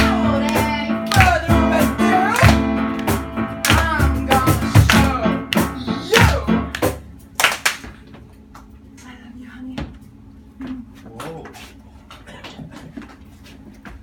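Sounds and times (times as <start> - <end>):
person singing: 0.0 - 2.7, 3.6 - 6.7
guitar: 0.0 - 7.0
sharp percussive hits: 0.0 - 7.7.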